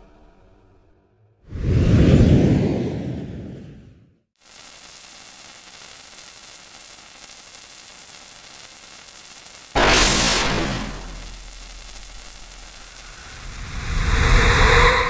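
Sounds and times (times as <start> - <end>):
static hiss: 4.4 - 15.0
cartoon whoosh effect: 9.8 - 11.4.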